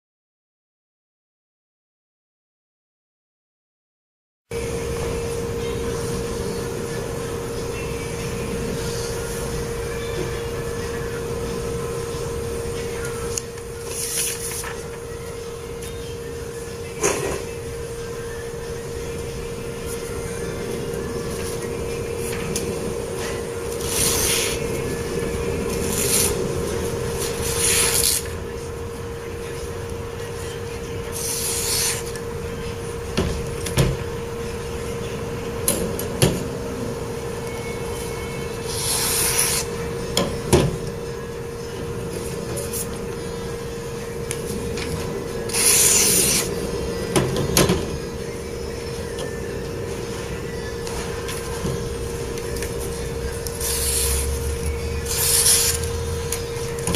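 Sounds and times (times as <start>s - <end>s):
knife hissing on sanding belt: 23.8s - 24.6s, 27.4s - 28.3s, 31.1s - 32.1s, 38.7s - 39.7s, 45.5s - 46.5s, 53.6s - 54.4s, 55.1s - 55.9s.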